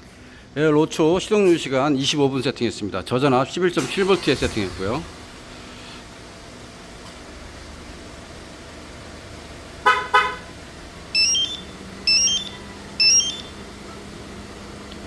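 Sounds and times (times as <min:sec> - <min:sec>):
car horn toots: 0:09.8 - 0:10.6
electronic chirp melodies: 0:11.1 - 0:13.6.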